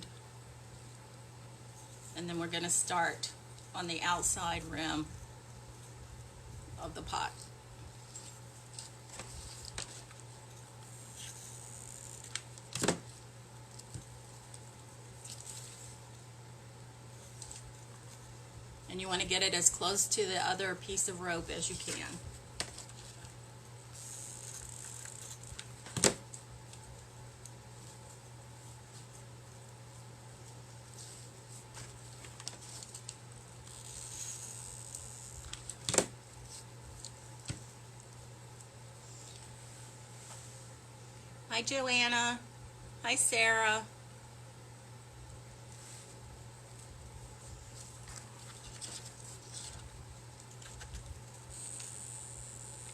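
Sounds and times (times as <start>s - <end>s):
steady low hum: 0.0s - 52.9s
small clicks and rustles: 30.4s - 39.6s, 46.7s - 52.1s.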